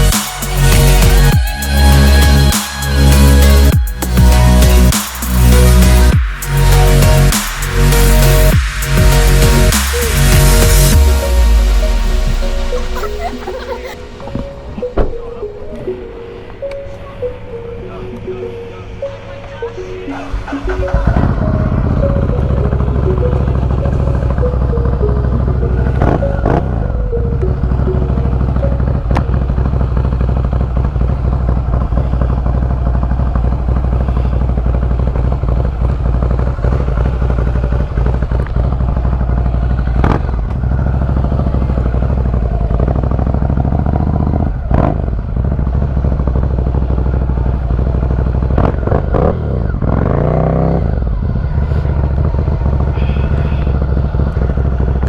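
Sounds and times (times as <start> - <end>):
motorcycle engine running: 20.9 - 55.0.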